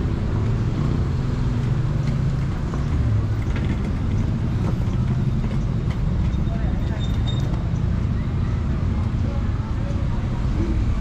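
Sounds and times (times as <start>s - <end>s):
vehicle engines rumbling: 0.0s - 11.0s.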